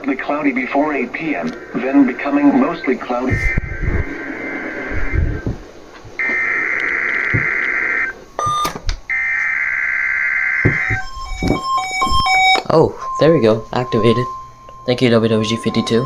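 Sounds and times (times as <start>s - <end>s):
alert receiver beeping: 2.4s - 9.4s, 10.6s - 16.0s
harsh digital data bursts: 10.6s - 16.0s.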